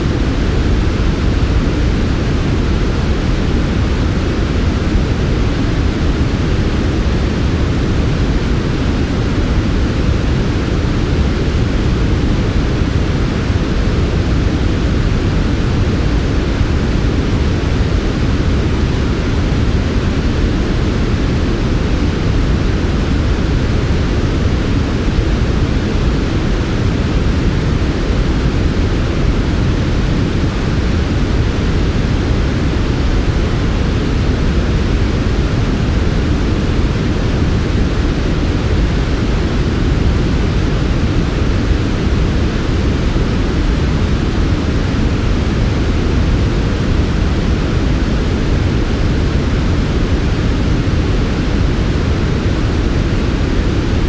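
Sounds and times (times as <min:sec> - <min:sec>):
steady white noise hiss: 0:00.0 - 0:54.0.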